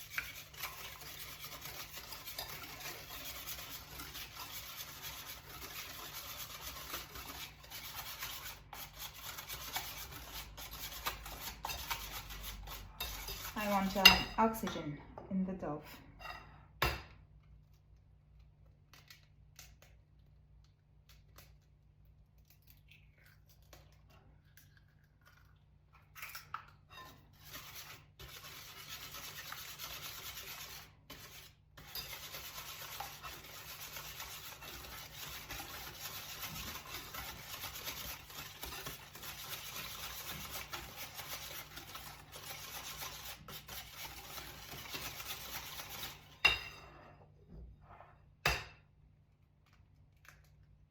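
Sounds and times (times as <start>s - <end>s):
whisk scraping in a bowl: 0.0s - 14.8s, 26.9s - 47.2s.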